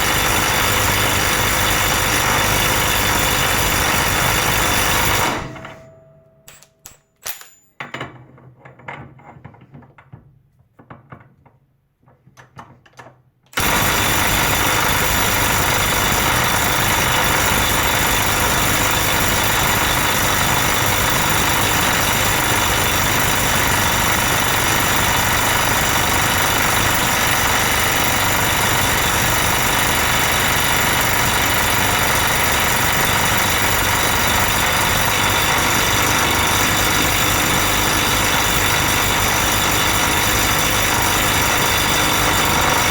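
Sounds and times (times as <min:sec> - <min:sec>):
impact wrench hammering: 0:00.0 - 0:08.2, 0:13.6 - 0:42.9
clicks and handling knocks: 0:05.6 - 0:13.6.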